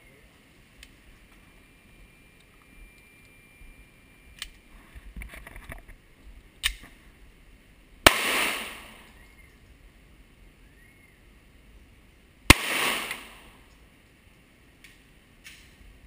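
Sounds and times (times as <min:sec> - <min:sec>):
small clicks: 0:04.4 - 0:04.6, 0:06.6 - 0:07.0
pistol shot with ringing echo: 0:08.0 - 0:09.1, 0:12.5 - 0:13.6.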